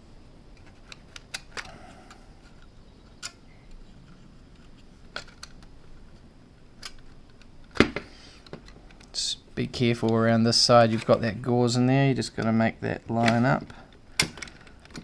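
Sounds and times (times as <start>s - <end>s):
plastic parts clicking together: 0.5s - 9.2s, 13.2s - 15.0s.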